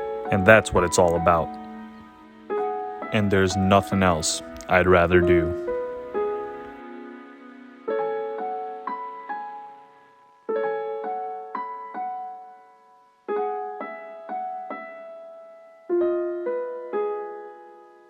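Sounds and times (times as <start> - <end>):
slow solo piano: 7.9 - 18.0.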